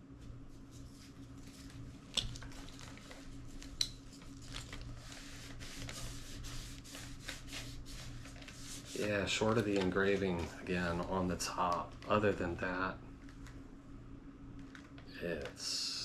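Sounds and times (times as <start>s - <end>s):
faint steady hum: 0.0s - 16.0s
soft rubbing and shuffling: 0.1s - 12.6s.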